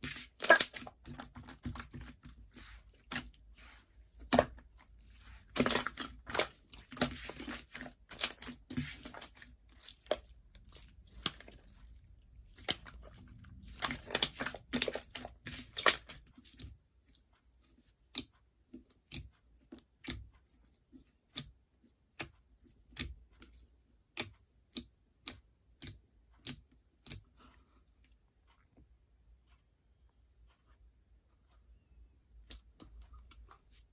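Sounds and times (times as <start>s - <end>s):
slime squelching: 0.0s - 17.3s.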